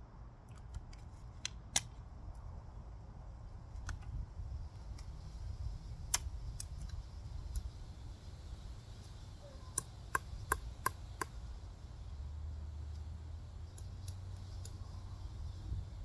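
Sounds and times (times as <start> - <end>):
plastic clicks and snaps: 0.5 - 2.4.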